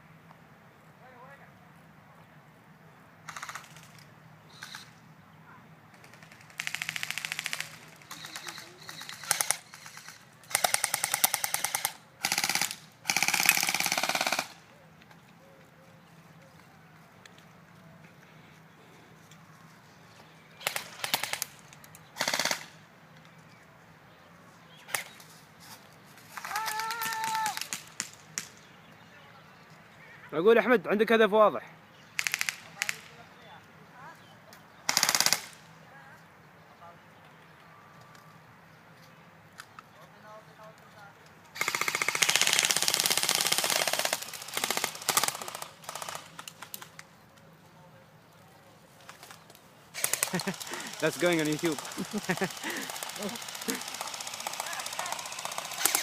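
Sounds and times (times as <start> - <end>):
airsoft guns firing: 3.3 - 4.9, 5.9 - 14.6, 20.6 - 22.8, 26.3 - 28.6, 32.2 - 33.2, 34.9 - 35.7, 41.5 - 47.0, 49.9 - 56.0.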